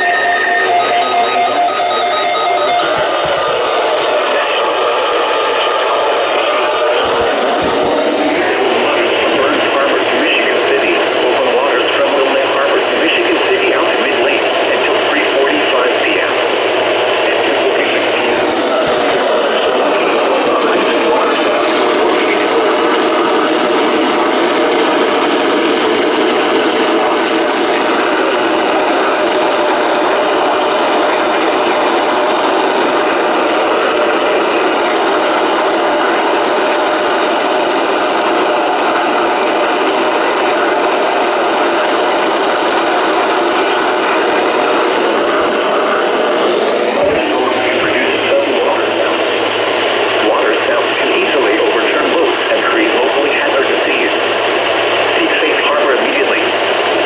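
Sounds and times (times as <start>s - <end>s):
radio static hiss: 6.9s - 16.6s, 17.2s - 19.0s, 47.1s - 49.2s, 50.2s - 54.3s, 55.1s - 56.6s.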